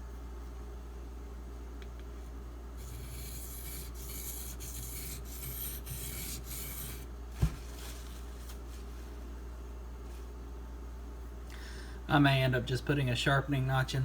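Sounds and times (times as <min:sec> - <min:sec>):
blade scraping on whetstone: 0:02.8 - 0:07.1.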